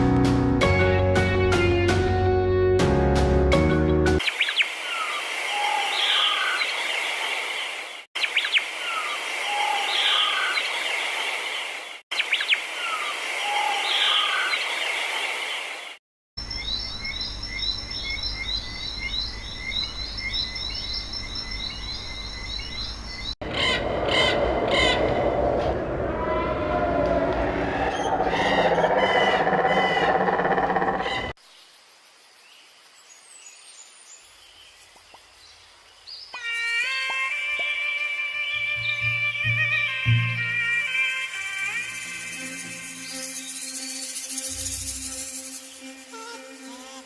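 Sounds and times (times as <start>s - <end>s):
wild birds chirping: 4.2s - 36.4s, 38.4s - 47.0s.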